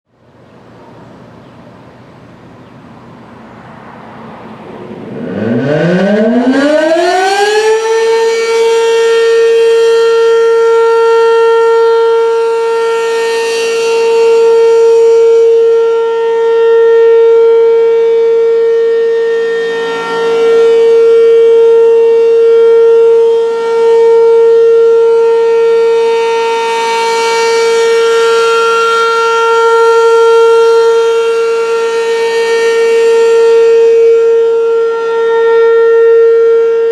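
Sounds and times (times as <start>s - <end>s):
mechanical warning siren wailing: 3.6s - 36.9s.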